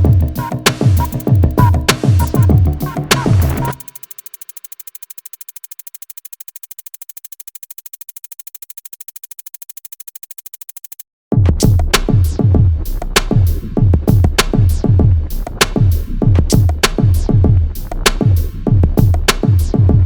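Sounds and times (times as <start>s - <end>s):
electronic music: 0.0s - 8.2s
fast ticking synth pulse: 0.0s - 11.0s
drum machine beat: 0.0s - 20.0s.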